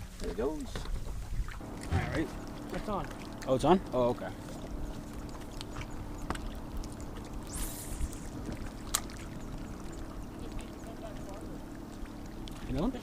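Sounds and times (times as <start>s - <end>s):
low hum: 1.5s - 13.0s
water rushing: 1.6s - 13.0s.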